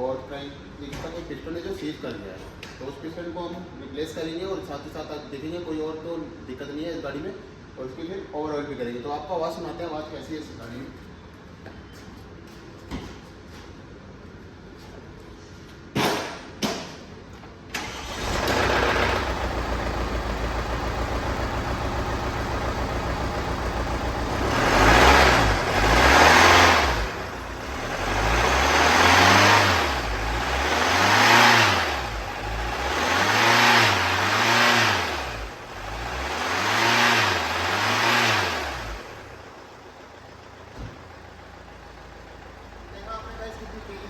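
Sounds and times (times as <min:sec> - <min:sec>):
car engine idling and revving: 0:17.8 - 0:44.0.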